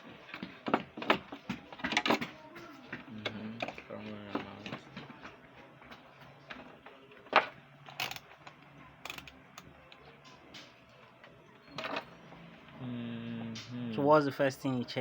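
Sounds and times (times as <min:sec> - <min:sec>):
small objects clicking and knocking: 0:07.3 - 0:09.7.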